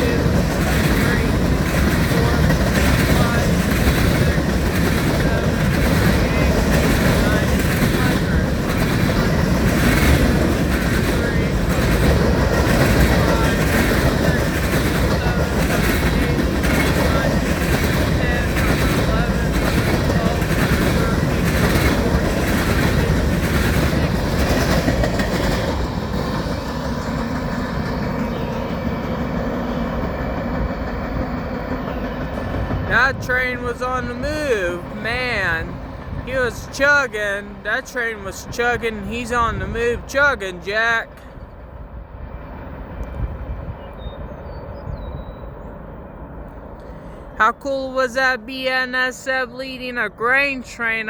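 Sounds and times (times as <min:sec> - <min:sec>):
wheels clicking over rail joints: 0:00.0 - 0:28.3
freight train cars rolling: 0:00.0 - 0:51.0.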